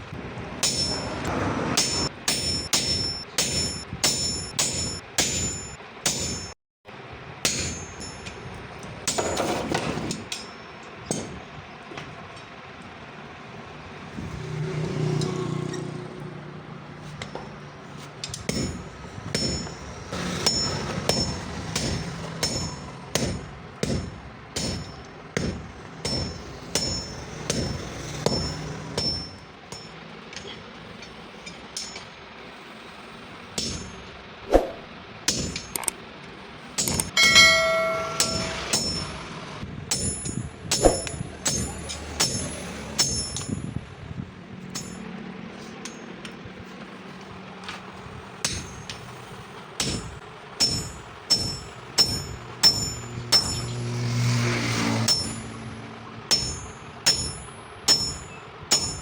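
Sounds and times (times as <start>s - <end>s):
hammer striking steel on anvil: 0.6s - 6.6s, 7.4s - 11.5s, 18.2s - 32.2s, 33.6s - 35.9s, 36.8s - 43.8s, 44.7s - 45.1s, 48.4s - 49.1s, 49.8s - 59.0s
steady low hum: 18.5s - 42.4s.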